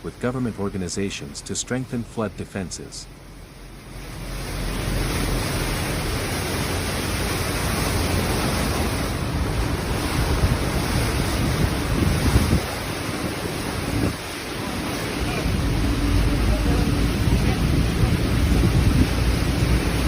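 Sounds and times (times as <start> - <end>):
floodwater rushing: 0.0 - 20.0
wind buffeting microphone: 8.5 - 20.0.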